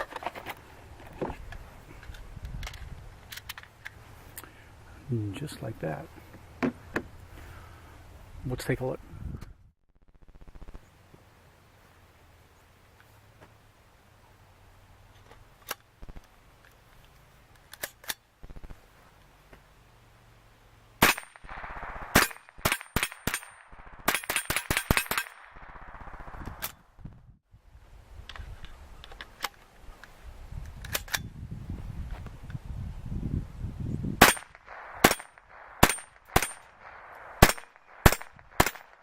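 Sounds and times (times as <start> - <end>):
rifle shots cracking: 21.0 - 26.8, 34.2 - 39.0.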